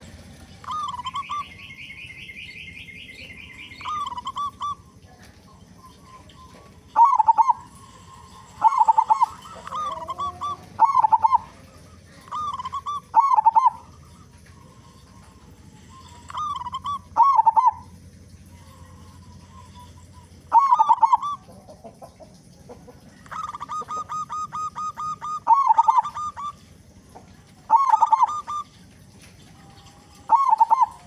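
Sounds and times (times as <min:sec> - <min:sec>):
dove cooing: 0:00.0 - 0:31.0
small bird chirping trill: 0:00.4 - 0:31.0.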